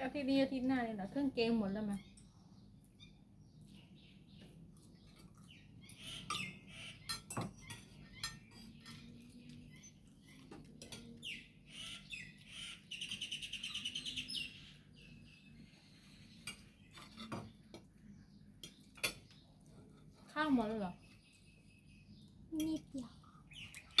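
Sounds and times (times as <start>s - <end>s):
bird chirping trill: 1.9s - 19.6s, 20.4s - 24.0s
spoons and dishes clinking: 6.2s - 11.2s.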